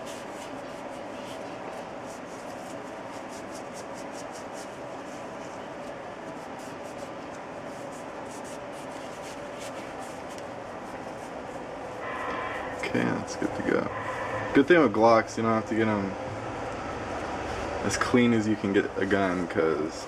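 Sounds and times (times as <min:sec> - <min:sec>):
cloth rubbing on metal: 0:00.0 - 0:14.9.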